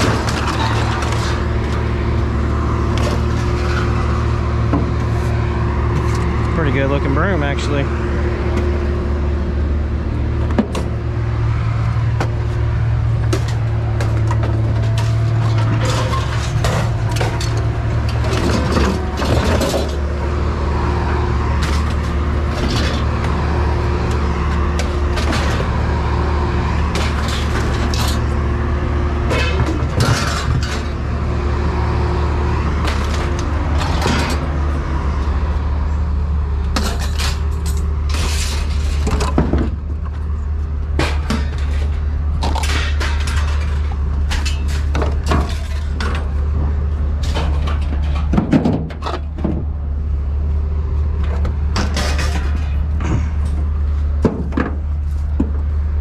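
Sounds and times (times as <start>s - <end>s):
truck engine running: 0.0s - 56.0s
scrap metal clanking: 13.3s - 20.1s, 29.3s - 31.0s, 36.7s - 39.5s, 51.7s - 53.6s.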